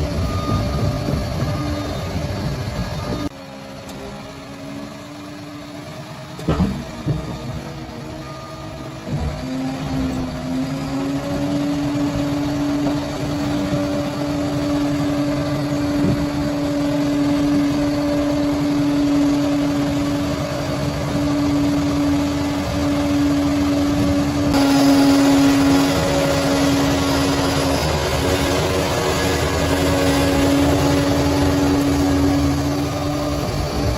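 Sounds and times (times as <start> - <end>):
bulldozer diesel engine droning: 0.0 - 33.9.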